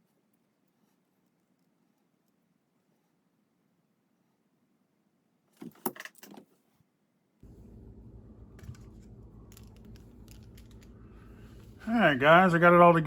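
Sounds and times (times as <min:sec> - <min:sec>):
small parts clattering: 0:05.6 - 0:06.5, 0:08.5 - 0:11.8
steady low hum: 0:07.4 - 0:13.0.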